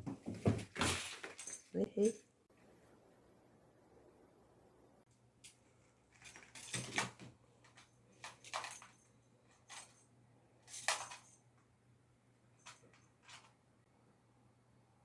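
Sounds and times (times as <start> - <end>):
knocks and clatters: 0.0 - 1.8.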